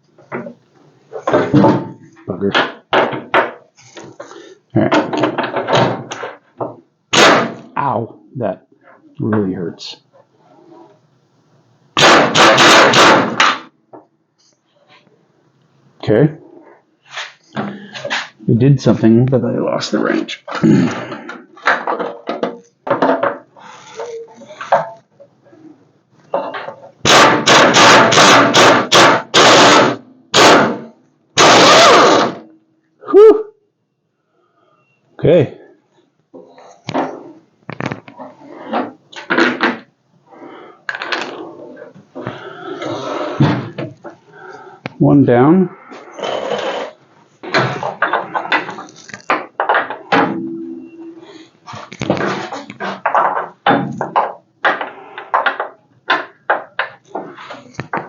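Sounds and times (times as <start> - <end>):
impact tool bursts: 12.0 - 13.7, 27.0 - 32.5
short ringing tone: 50.4 - 51.3.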